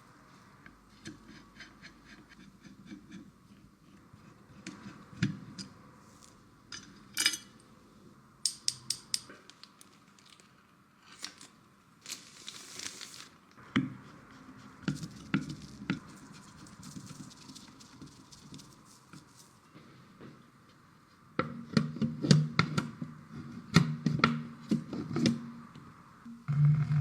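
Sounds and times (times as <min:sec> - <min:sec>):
rustling scrape: 0:14.1 - 0:20.1.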